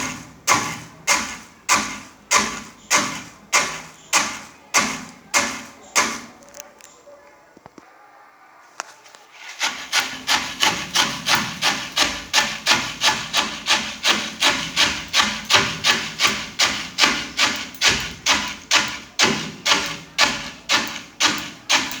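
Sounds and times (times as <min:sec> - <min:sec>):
maize pounded in mortar: 0:00.0 - 0:06.6, 0:09.4 - 0:22.0.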